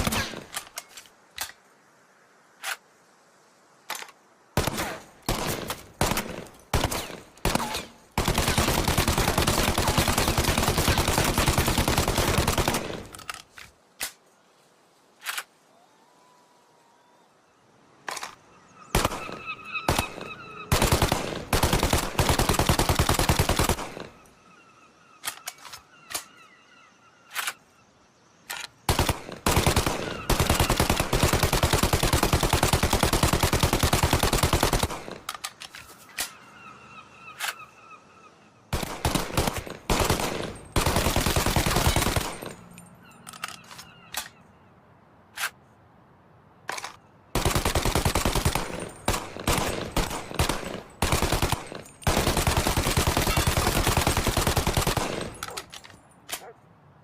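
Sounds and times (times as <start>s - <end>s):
submachine gun firing automatic bursts: 4.6s - 13.2s, 20.7s - 24.1s, 28.9s - 35.2s, 38.7s - 42.6s, 47.4s - 55.6s.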